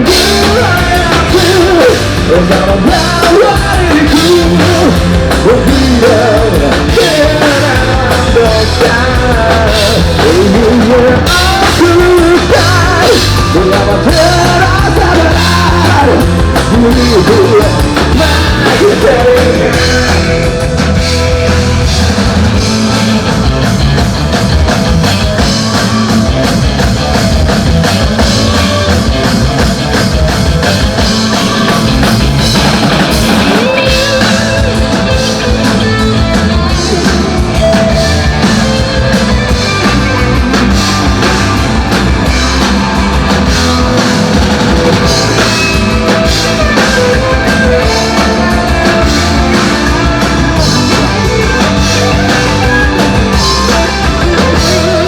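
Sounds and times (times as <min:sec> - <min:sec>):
bass guitar: 0:00.0 - 0:55.0
drum kit: 0:00.0 - 0:55.0
electric guitar: 0:00.0 - 0:55.0.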